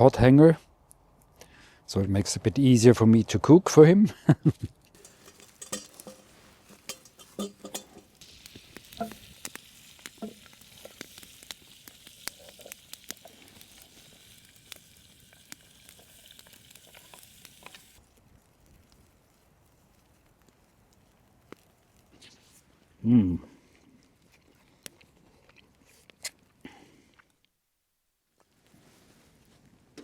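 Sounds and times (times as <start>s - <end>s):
food sizzling in a pan: 5.0s - 18.0s.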